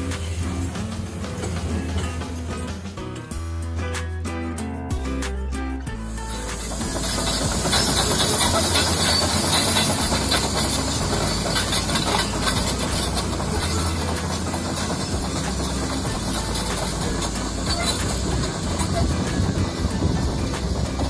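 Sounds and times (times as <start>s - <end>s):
diesel engine running: 0.0s - 4.2s, 4.9s - 21.0s
metallic clatter: 6.3s - 21.0s.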